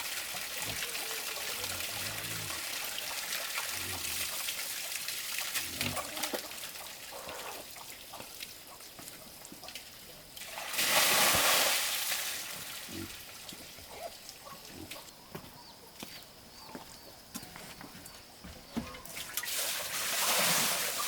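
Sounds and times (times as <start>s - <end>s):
water splashing: 9.7s - 13.8s, 19.0s - 21.0s.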